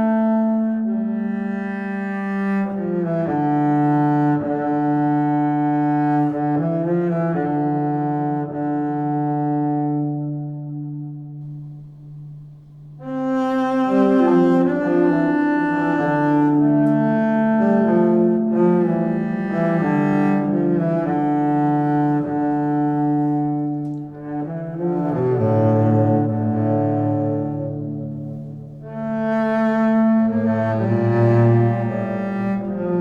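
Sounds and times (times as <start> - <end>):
bowed strings playing slow chords: 10.4 - 33.0.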